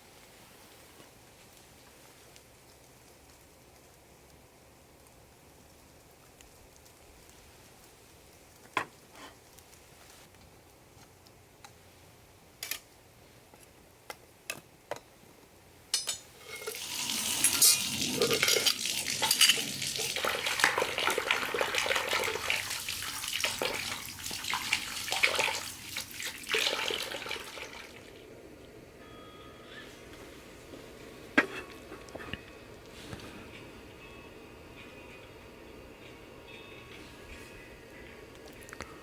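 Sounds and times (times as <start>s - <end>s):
metal cookware clinks: 15.9s - 16.8s, 17.4s - 19.7s
pots and utensils clattering: 15.9s - 22.4s, 31.3s - 33.2s.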